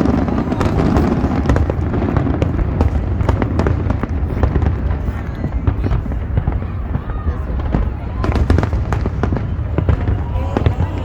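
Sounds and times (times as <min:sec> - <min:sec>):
fireworks cracking and popping: 0:00.0 - 0:11.0.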